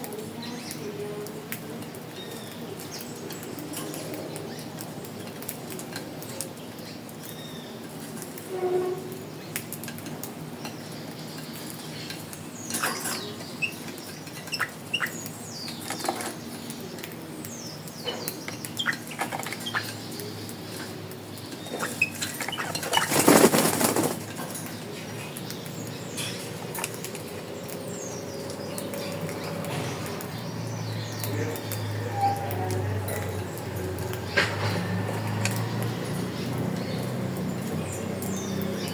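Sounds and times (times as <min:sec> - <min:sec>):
birds chirping: 0:00.0 - 0:38.9.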